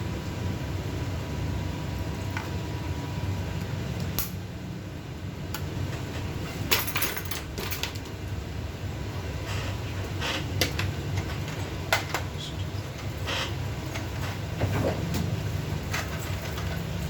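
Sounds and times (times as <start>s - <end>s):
steady low hum: 0.0s - 17.0s
parts and tools clattering on workbench: 6.2s - 8.1s.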